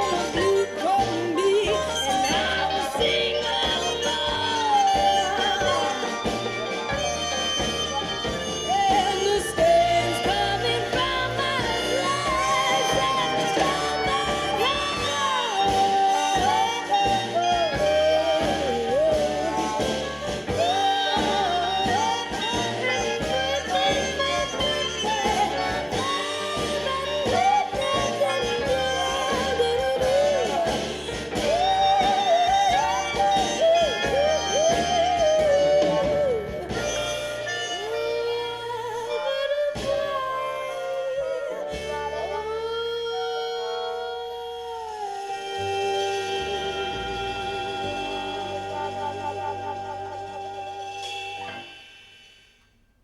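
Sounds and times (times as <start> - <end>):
rock song through speakers: 0.0 - 38.3
recorded music through loudspeakers: 0.0 - 53.0.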